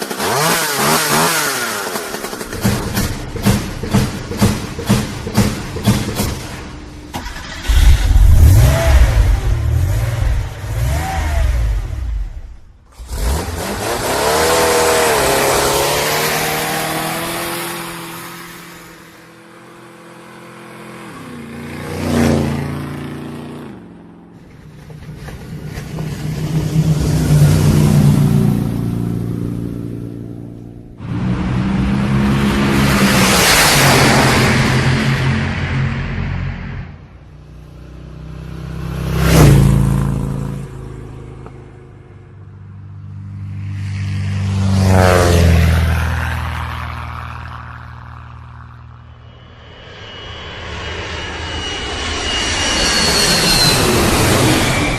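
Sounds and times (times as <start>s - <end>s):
car engine rumbling and revving: 0.0s - 54.9s.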